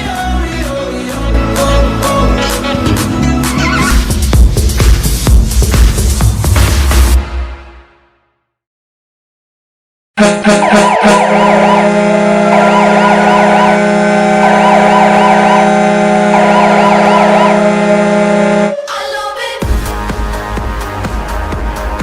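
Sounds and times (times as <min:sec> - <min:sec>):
goal horn blaring: 0:10.2 - 0:18.8
siren warbling: 0:10.2 - 0:19.2.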